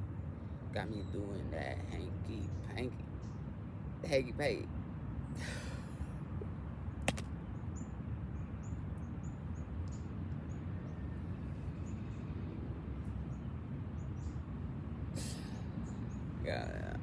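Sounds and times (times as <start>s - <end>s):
sharp click: 7.0s - 7.3s.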